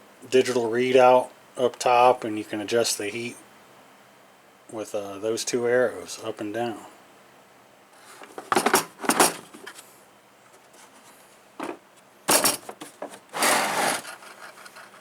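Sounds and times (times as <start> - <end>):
tools scraping and clattering: 8.1 - 9.8, 11.6 - 15.0.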